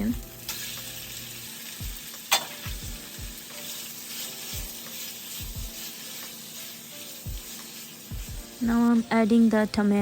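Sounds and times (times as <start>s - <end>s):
onion sizzling in oil: 0.0s - 10.0s.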